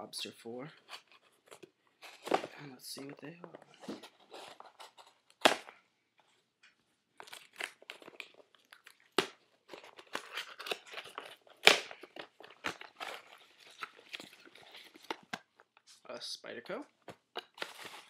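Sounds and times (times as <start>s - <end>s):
cardboard crinkling and tearing: 0.8s - 5.7s, 7.2s - 15.5s, 17.3s - 18.0s.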